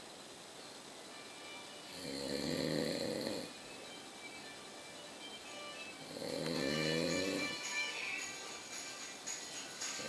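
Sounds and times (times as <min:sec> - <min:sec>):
background music: 0:01.1 - 0:10.0
man snoring: 0:01.9 - 0:03.6, 0:06.0 - 0:07.6.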